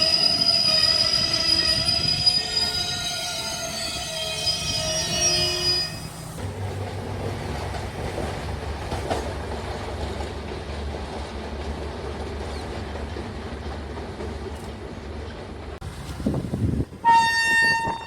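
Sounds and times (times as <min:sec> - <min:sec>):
train wheel squeal: 0:00.0 - 0:06.4
train wheel clatter: 0:06.2 - 0:16.3.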